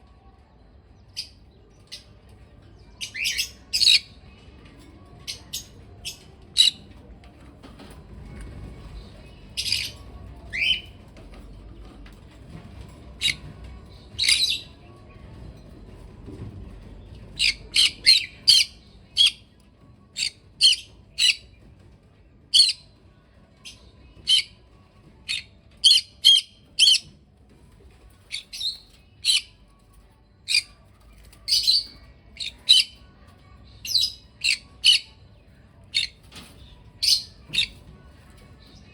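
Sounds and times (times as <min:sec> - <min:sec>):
parrots chirping and squawking: 0:03.0 - 0:04.1, 0:05.3 - 0:07.0, 0:09.4 - 0:11.4, 0:12.4 - 0:14.8, 0:17.2 - 0:19.5, 0:20.1 - 0:21.6, 0:22.6 - 0:22.9, 0:23.7 - 0:24.6, 0:25.2 - 0:27.1, 0:28.1 - 0:29.6, 0:30.4 - 0:33.1, 0:33.7 - 0:35.2, 0:35.8 - 0:37.9.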